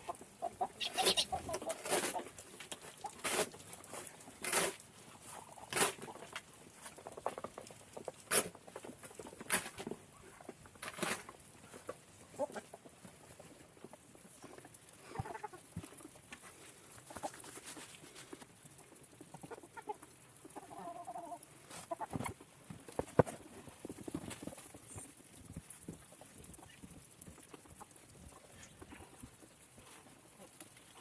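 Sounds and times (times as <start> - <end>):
chickens clucking: 0.0 - 3.6, 4.4 - 16.2, 18.7 - 31.0.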